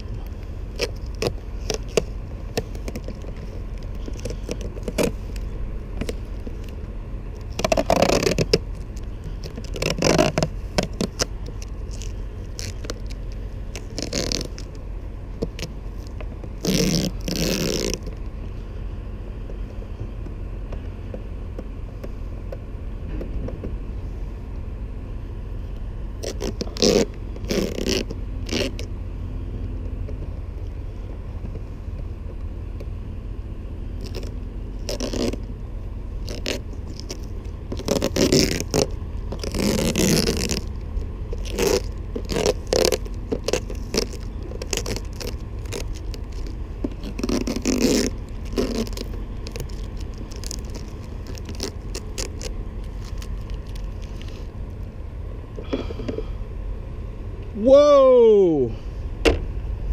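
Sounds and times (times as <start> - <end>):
close scraping and rustling: 0.0 - 57.3
steady low rumble: 0.0 - 59.9.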